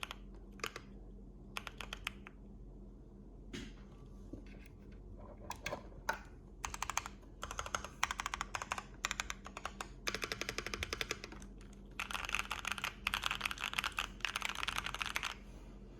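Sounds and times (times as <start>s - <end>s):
mechanical keyboard typing: 0.0s - 0.9s, 1.6s - 2.4s, 5.5s - 15.4s.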